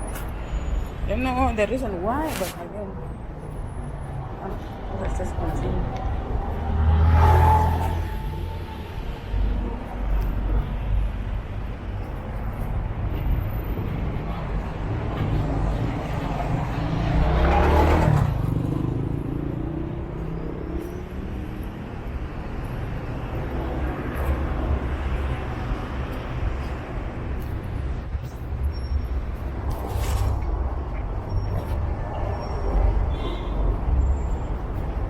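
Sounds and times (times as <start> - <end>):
rumble of road traffic: 0.0 - 35.0
vehicle passing close: 16.0 - 22.4.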